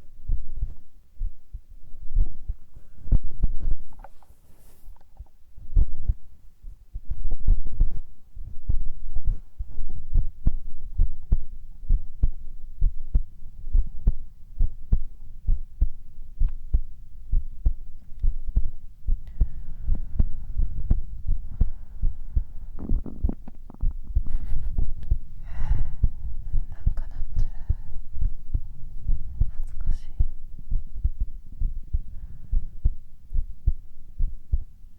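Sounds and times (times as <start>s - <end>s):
heartbeat thumps: 0.0s - 4.1s, 5.2s - 34.8s
faint hiss: 3.9s - 5.2s.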